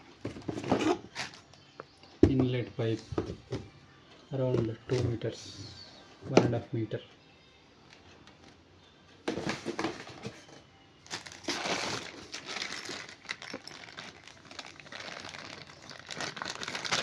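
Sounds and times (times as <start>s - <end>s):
packaging crinkling and rustling: 9.3s - 17.0s.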